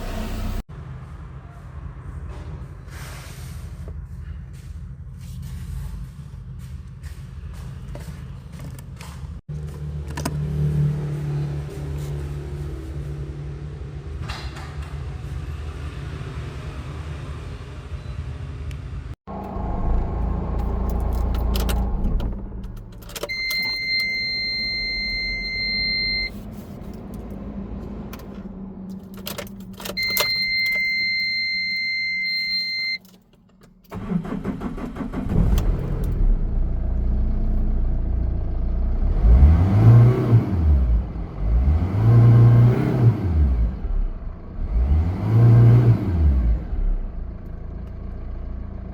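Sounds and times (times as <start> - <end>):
long electronic beeps: 23.3 - 26.3
car engine revving: 33.9 - 47.3.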